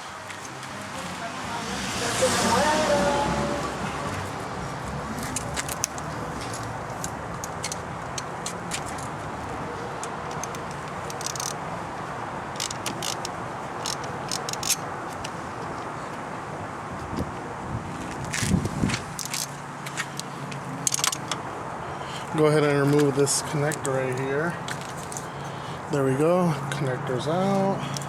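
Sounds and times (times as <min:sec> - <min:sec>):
tools clicking and rattling: 0:05.2 - 0:09.2, 0:10.0 - 0:11.6, 0:12.5 - 0:15.9, 0:19.1 - 0:21.4.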